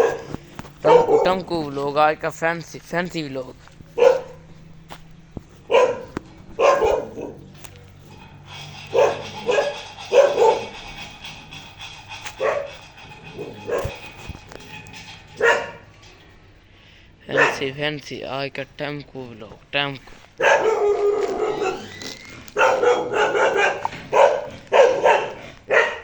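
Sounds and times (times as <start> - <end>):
dog barking: 0.0 - 1.5, 4.0 - 4.5, 5.7 - 7.6, 8.8 - 11.0, 12.2 - 12.8, 13.4 - 14.1, 15.4 - 15.9, 17.3 - 17.8, 20.4 - 26.0.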